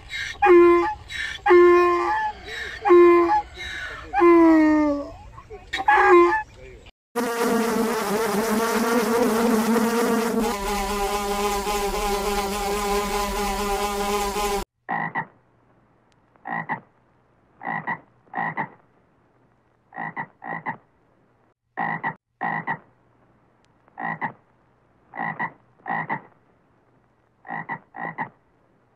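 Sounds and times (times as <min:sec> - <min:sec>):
wavering animal call: 0:00.1 - 0:05.1, 0:05.8 - 0:06.5.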